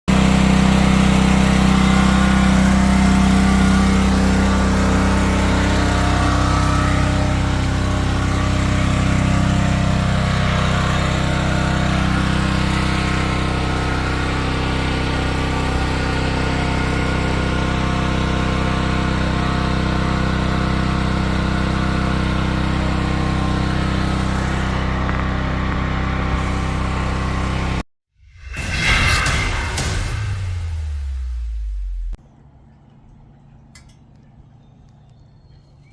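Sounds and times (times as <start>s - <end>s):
small engine running: 0.1s - 27.9s.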